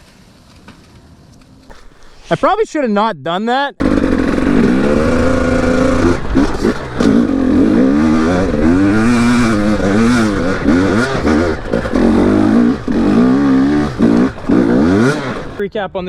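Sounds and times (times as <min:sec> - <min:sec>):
dirt bike engine revving: 0:03.8 - 0:15.6.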